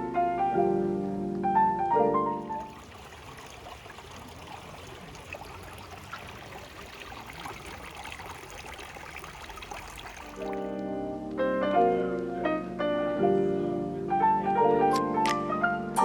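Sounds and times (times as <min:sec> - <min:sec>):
running water: 0:02.2 - 0:10.9.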